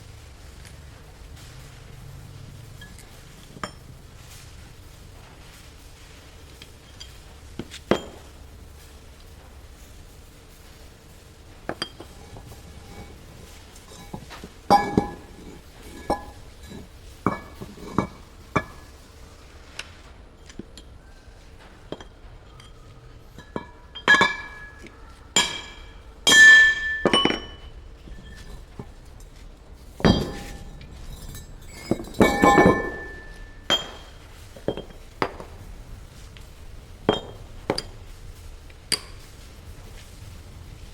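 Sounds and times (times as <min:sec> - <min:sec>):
metallic clinks and clanks: 0:01.4 - 0:40.3.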